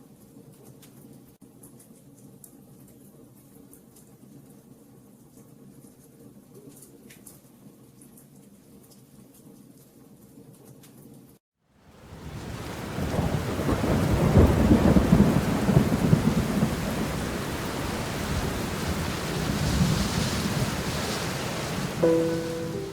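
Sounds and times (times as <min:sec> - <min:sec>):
heavy rain: 0:11.8 - 0:22.9
thunder rumbling: 0:12.0 - 0:22.9.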